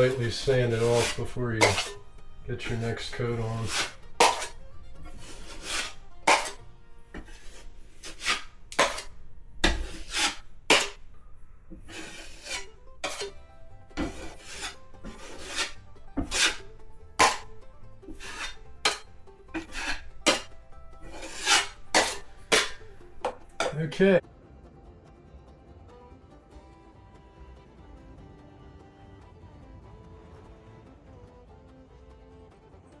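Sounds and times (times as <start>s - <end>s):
rasping on drywall compound: 0.0s - 2.0s, 2.7s - 6.6s, 7.2s - 11.0s, 11.8s - 13.3s, 14.0s - 17.5s, 18.1s - 22.9s.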